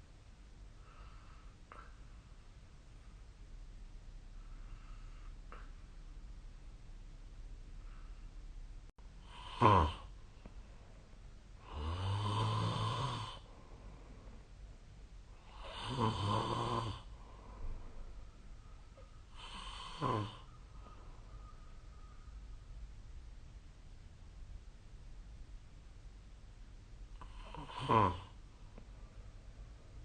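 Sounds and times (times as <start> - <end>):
person snoring: 9.2 - 10.1, 11.6 - 13.5, 15.4 - 17.1, 19.4 - 20.5, 27.2 - 28.4.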